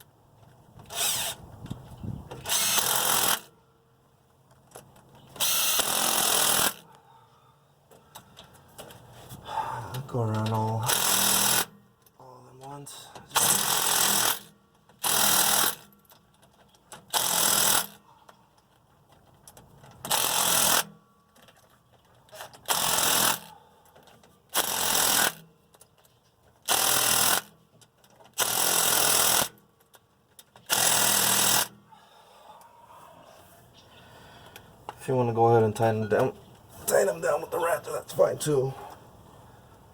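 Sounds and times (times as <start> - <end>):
power tool driving bolts: 0.8 - 3.6, 4.7 - 6.9, 10.4 - 11.8, 13.3 - 18.0, 19.2 - 31.8.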